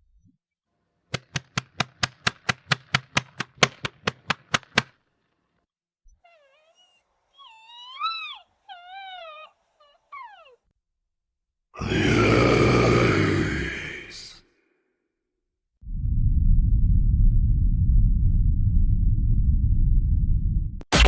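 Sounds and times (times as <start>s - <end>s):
fast sharp clicks: 1.1s - 5.0s.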